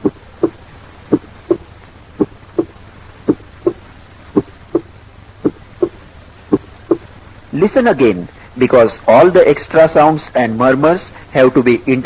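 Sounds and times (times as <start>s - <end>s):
heartbeat lub-dub: 0.0s - 7.1s.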